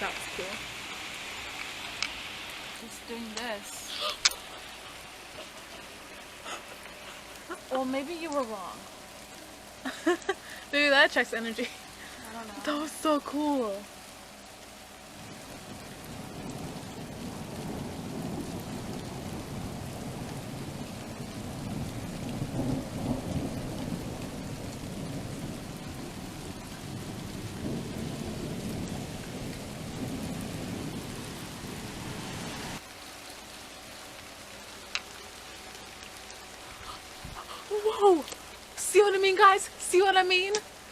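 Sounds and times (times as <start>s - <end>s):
steady rain: 0.0s - 40.9s
rolling thunder: 15.2s - 32.8s.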